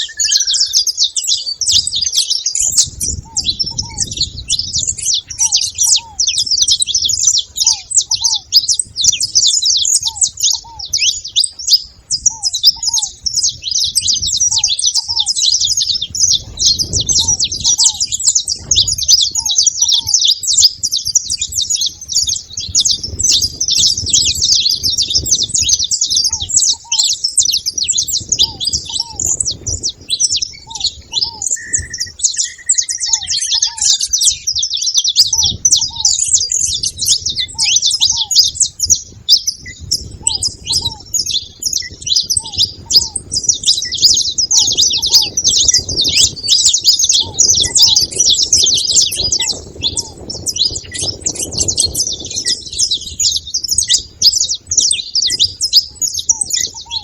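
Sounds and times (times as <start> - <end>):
short whistle: 0.0 - 0.8
finches chirping: 0.0 - 57.0
soft low bird call: 0.0 - 57.0.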